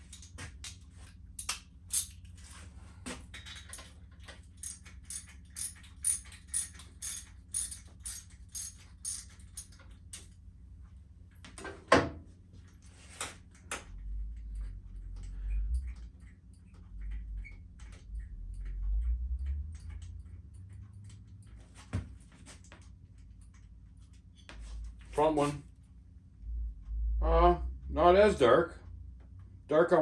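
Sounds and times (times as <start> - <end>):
socket ratchet clicking: 4.6 - 10.3.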